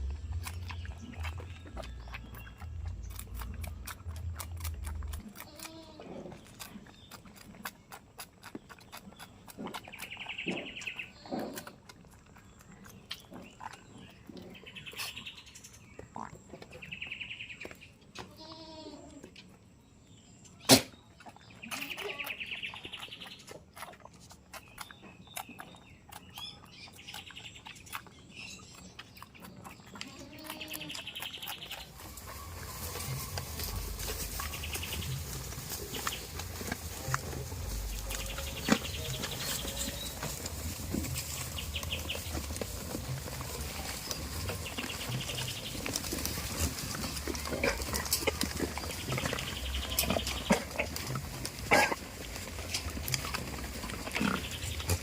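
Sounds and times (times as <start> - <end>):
bird chirping: 0.0 - 18.8, 19.8 - 51.9, 52.5 - 55.0
goats clicking and crunching: 0.0 - 55.0
goat bleating: 5.1 - 6.4, 18.2 - 19.2, 21.6 - 22.5, 30.0 - 31.0.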